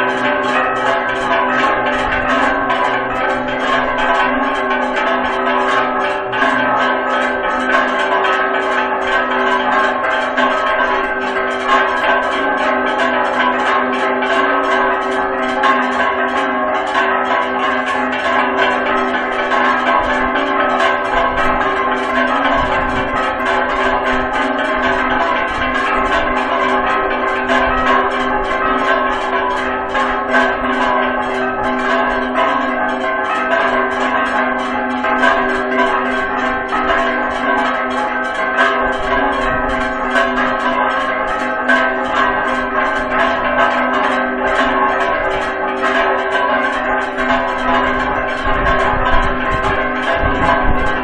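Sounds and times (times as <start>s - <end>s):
church bells ringing rapidly: 0.0s - 51.0s.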